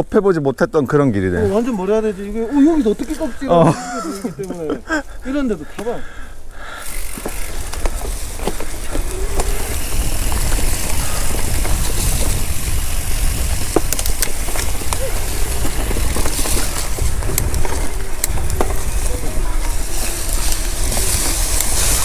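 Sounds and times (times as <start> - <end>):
bike tyres on dirt trail: 0.0 - 22.0
wind rushing over microphone: 6.9 - 22.0.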